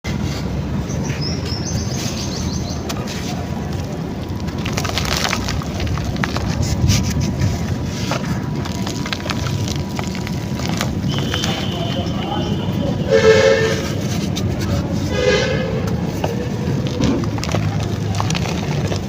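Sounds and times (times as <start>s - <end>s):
steady low rumble: 2.7s - 19.0s
clay crackling and snapping: 3.6s - 12.1s, 16.8s - 19.0s.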